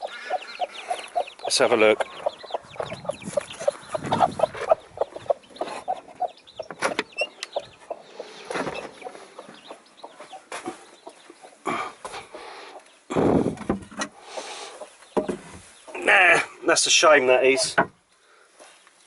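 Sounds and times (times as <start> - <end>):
hens clucking: 0.0 - 17.9.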